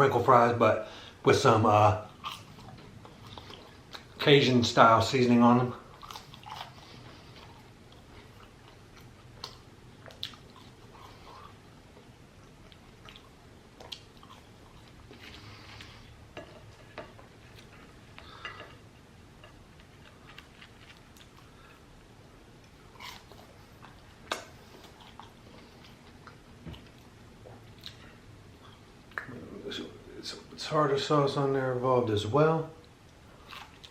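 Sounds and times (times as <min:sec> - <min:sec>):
man chewing crunchy food: 0:02.0 - 0:04.2, 0:05.8 - 0:29.2, 0:33.0 - 0:33.9.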